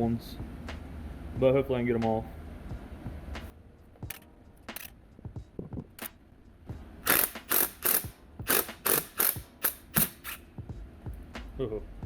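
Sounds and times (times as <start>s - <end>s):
socket ratchet clicking: 4.1s - 5.0s, 7.0s - 10.4s.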